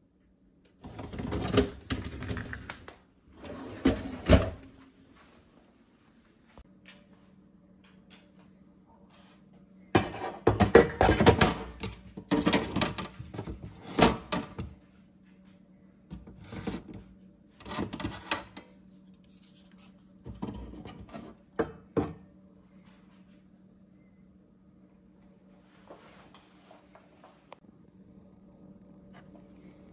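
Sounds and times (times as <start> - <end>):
faint steady hum: 0.0 - 29.9
coffee machine parts clattering: 10.0 - 14.7.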